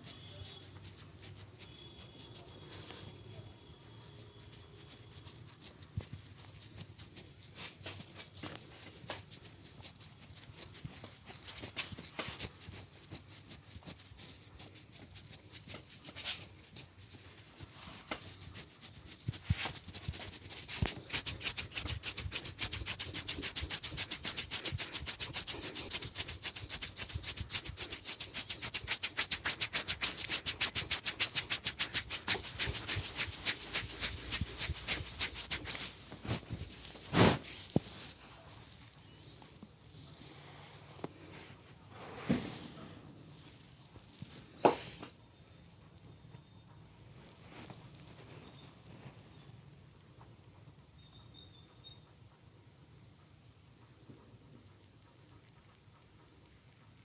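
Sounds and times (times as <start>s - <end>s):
hands rubbing skin and hair: 0.0s - 45.2s, 47.2s - 49.5s
rhythmic pats: 18.1s - 36.8s.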